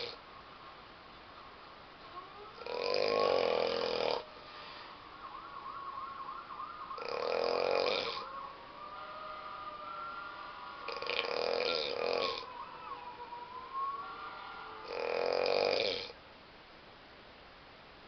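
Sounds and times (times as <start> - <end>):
person snoring loudly: 0.0 - 0.2, 2.6 - 4.3, 7.0 - 8.3, 10.8 - 12.6, 14.8 - 16.2
faint warbling siren: 2.0 - 15.8.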